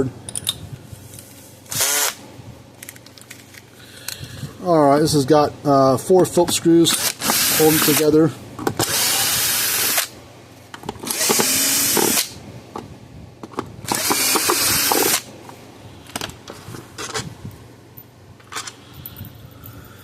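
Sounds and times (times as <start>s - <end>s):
power drill running: 1.7s - 2.2s, 7.0s - 8.0s, 8.8s - 10.1s, 11.1s - 12.4s, 13.9s - 15.3s.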